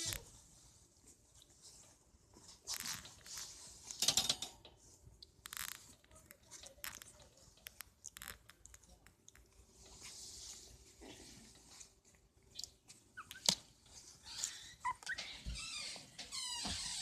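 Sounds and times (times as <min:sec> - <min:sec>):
puppies rustling and snuffling: 0:04.8 - 0:16.2.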